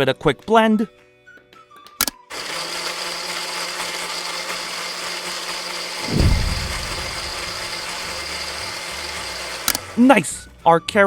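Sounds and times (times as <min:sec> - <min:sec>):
electric blender running: 0:02.3 - 0:10.2
deep rumble: 0:06.0 - 0:08.0.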